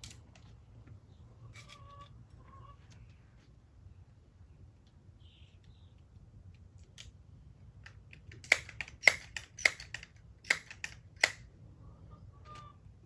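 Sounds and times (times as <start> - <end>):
pellet pistol mechanical clicks: 7.8 - 11.5.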